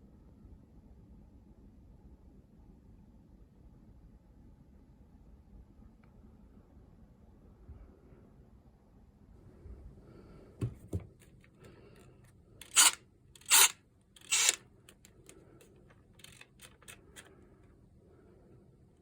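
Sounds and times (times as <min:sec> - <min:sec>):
loud scraping strokes: 0:12.6 - 0:14.6.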